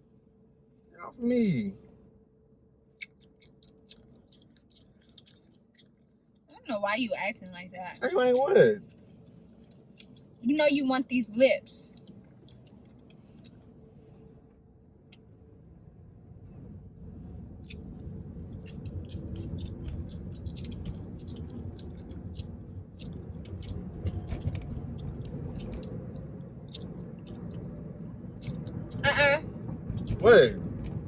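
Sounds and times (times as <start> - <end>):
gum chewing with wet smacks: 3.0 - 6.6, 8.4 - 10.4, 11.7 - 14.0, 17.5 - 29.0
car cabin rumble: 15.4 - 31.0.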